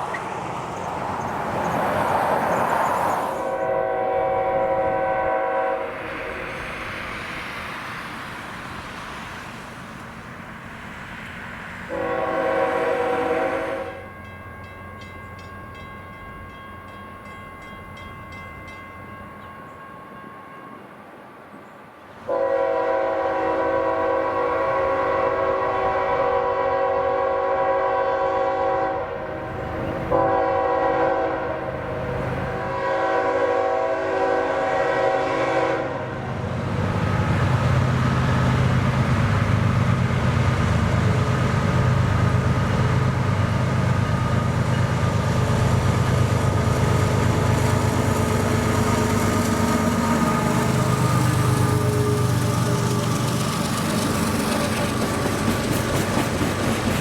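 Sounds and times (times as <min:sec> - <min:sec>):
rumble of passing train: 0:00.0 - 0:57.0
locomotive air horn blasts: 0:03.4 - 0:06.5, 0:11.9 - 0:14.1, 0:22.3 - 0:29.4, 0:30.1 - 0:31.8, 0:32.6 - 0:36.3.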